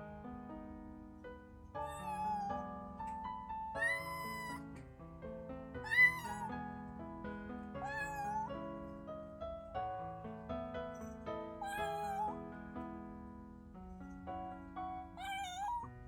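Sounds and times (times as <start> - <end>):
soft piano music: 0.0 - 16.0
kitten meowing: 1.8 - 2.7, 3.7 - 4.7, 5.8 - 6.6, 7.8 - 8.6, 11.6 - 12.3, 15.2 - 15.9.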